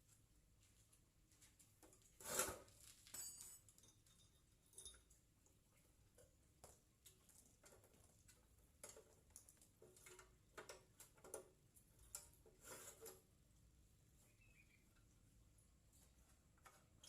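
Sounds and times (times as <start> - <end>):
faint clicks and knocks of tools: 2.8 - 13.3.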